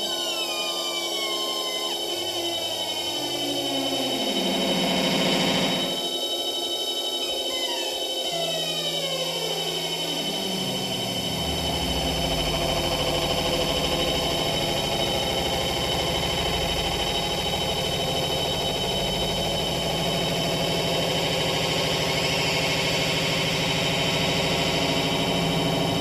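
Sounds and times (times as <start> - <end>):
electronic noise drone: 0.0 - 26.0
high whine: 0.0 - 26.0
low tone sliding down: 7.5 - 26.0.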